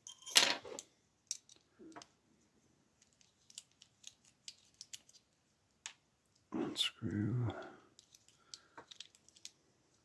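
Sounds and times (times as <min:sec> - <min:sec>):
small metal parts clicking: 0:00.0 - 0:02.1, 0:03.0 - 0:06.0, 0:07.9 - 0:09.6.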